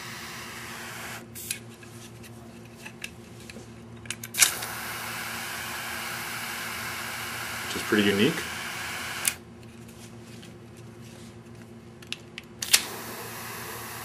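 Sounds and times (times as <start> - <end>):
lighter flame hissing: 0.0 - 1.2, 12.7 - 14.0.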